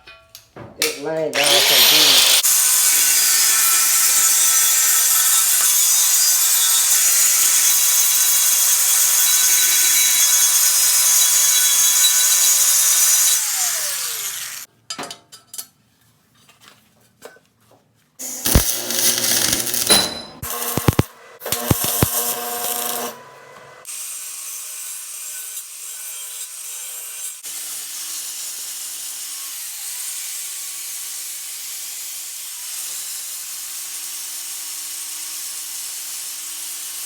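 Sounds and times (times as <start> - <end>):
grinder grinding metal: 1.3 - 14.7, 18.2 - 27.4.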